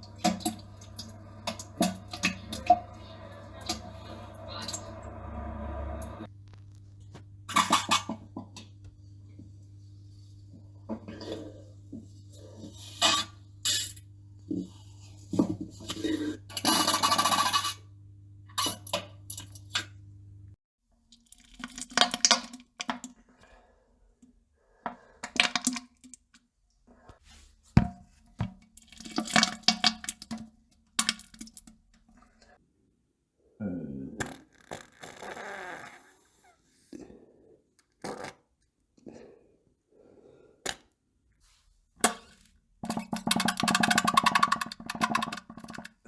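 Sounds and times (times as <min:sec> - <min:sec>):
low steady hum: 0:00.0 - 0:20.6
diarrhea and farting sputters: 0:15.3 - 0:17.8, 0:33.8 - 0:37.1, 0:37.8 - 0:38.6, 0:42.8 - 0:46.0.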